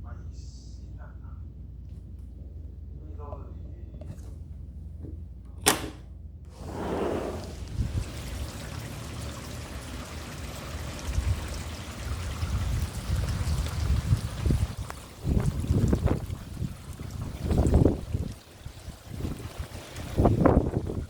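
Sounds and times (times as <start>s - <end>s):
sharp click: 5.6s - 6.0s
heavy rain hissing: 6.6s - 9.5s.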